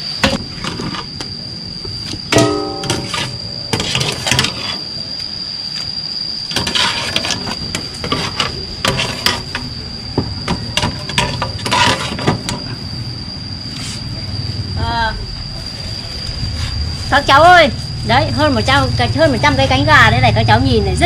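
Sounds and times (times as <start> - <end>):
steady high-pitched whine: 0.0 - 21.0
metal ladle clattering in pot: 2.4 - 4.6.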